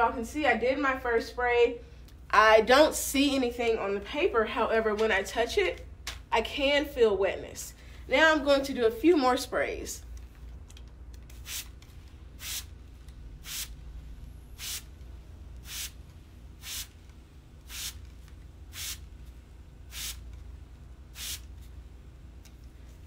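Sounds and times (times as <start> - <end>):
spray bottle hissing: 11.3 - 11.8, 12.4 - 12.8, 13.4 - 13.8, 14.6 - 14.9, 15.6 - 16.0, 16.6 - 17.0, 17.6 - 18.1, 18.7 - 19.1, 19.9 - 20.2, 21.1 - 21.5.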